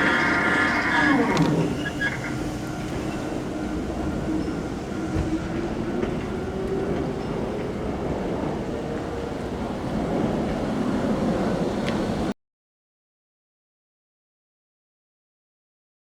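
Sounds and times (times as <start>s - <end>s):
train motor whine: 0.0s - 7.7s
electric train running: 0.0s - 12.3s.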